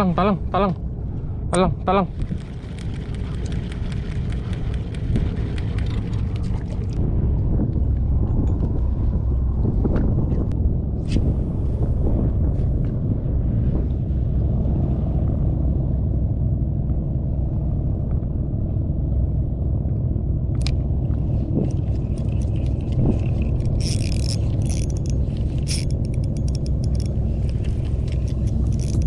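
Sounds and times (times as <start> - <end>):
wind buffeting microphone: 2.1 - 29.0
light clicks and rattles: 21.6 - 29.0.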